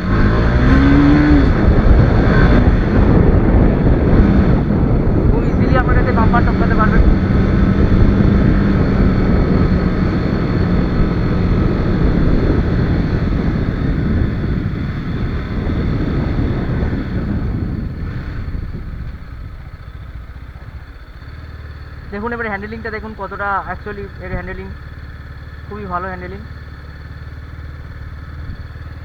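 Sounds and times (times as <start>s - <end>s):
wind rush on microphone: 0.0s - 21.1s
motorcycle engine running: 0.0s - 29.0s.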